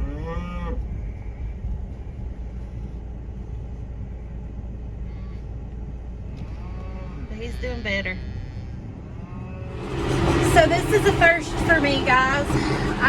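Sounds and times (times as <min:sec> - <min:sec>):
low engine rumble: 0:00.0 - 0:13.0
calf bawling: 0:06.7 - 0:09.6.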